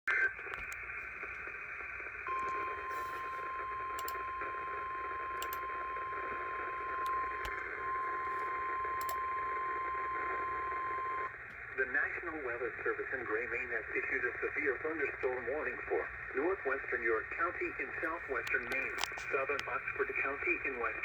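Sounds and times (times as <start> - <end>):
radio static with clicks: 0.1 - 21.0
steady high alarm tone: 2.3 - 11.3.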